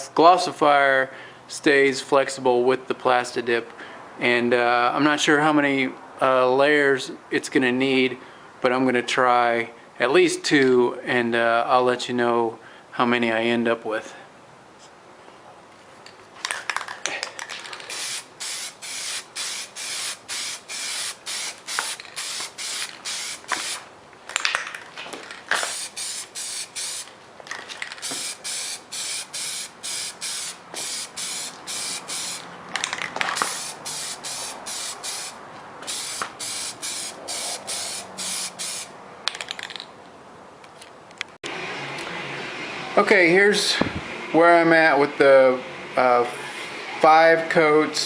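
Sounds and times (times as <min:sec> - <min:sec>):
aerosol spray can hissing: 0:17.8 - 0:23.8, 0:25.6 - 0:27.1, 0:28.0 - 0:32.4, 0:33.4 - 0:38.9.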